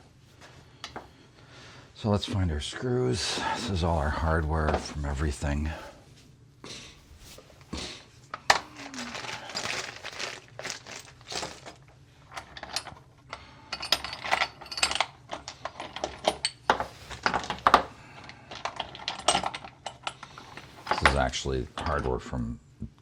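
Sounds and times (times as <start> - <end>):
metal screws clinking and rattling: 8.4 - 13.1, 13.7 - 21.2.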